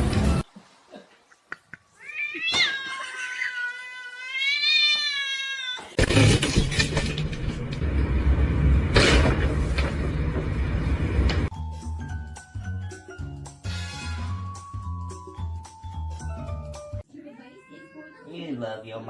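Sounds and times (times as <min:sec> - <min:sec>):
cat yowling: 0:02.0 - 0:06.0, 0:17.3 - 0:18.3.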